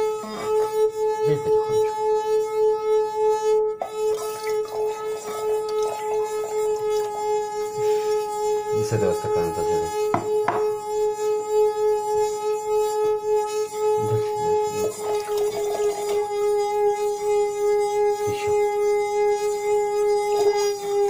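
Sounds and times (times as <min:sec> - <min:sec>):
glass rim ringing tone: 0:09.6 - 0:10.8.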